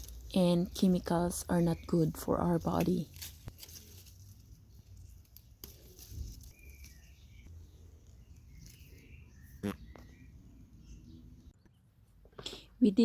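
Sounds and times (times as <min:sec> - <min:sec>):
high bird chirps: 0:06.4 - 0:11.7.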